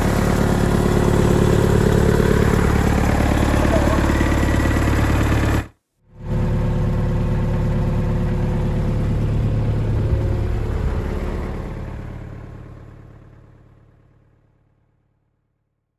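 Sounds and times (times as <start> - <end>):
tractor engine running: 0.0 - 14.0.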